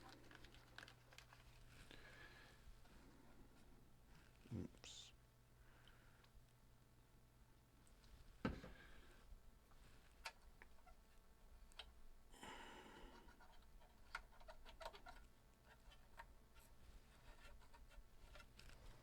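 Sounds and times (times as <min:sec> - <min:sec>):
faint clicks and scratching: 0:00.0 - 0:04.5, 0:09.7 - 0:12.0, 0:13.1 - 0:19.0.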